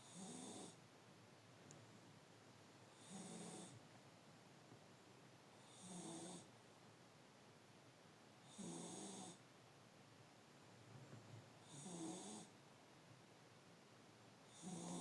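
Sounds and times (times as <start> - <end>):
pet snoring softly: 0.0 - 0.8, 2.9 - 3.8, 5.6 - 6.5, 8.4 - 9.4, 11.6 - 12.6, 14.5 - 15.0.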